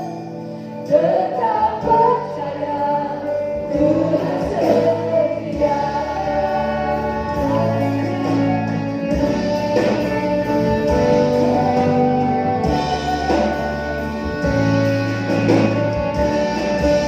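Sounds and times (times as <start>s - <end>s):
band playing sustained chords: 0.0s - 17.0s.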